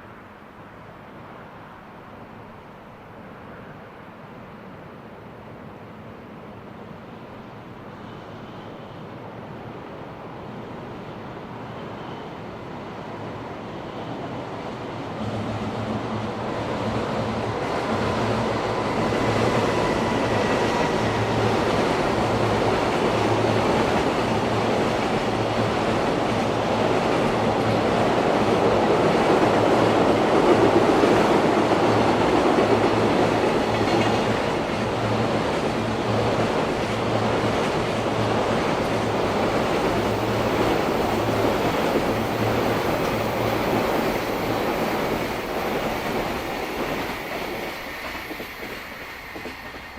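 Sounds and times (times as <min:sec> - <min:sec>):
freight train rumbling past: 0:05.5 - 0:49.9.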